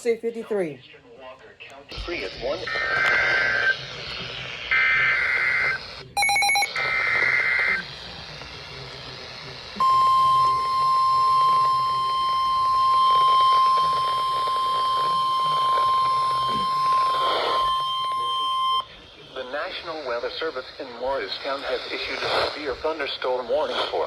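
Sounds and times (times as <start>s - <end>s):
radio hiss: 0.8s - 24.0s
steady warning alarm tone: 9.8s - 19.0s.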